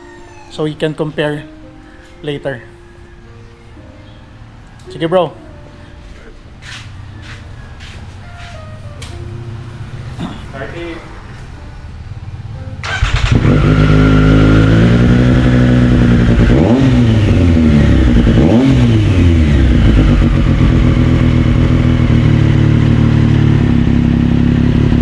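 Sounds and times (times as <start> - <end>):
motorcycle engine starting and idling: 9.0 - 25.0
motorcycle engine revving: 9.3 - 25.0.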